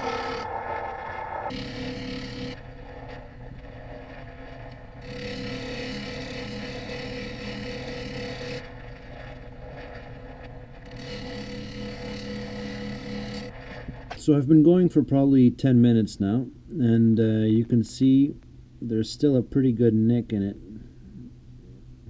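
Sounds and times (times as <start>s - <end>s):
bench grinder humming: 0.0s - 13.6s
chisel grinding on wheel: 1.5s - 14.0s.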